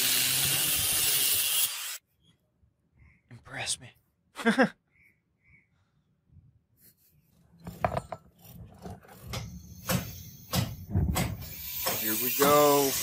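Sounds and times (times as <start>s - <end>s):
metal clinking and knocking: 7.6s - 11.3s.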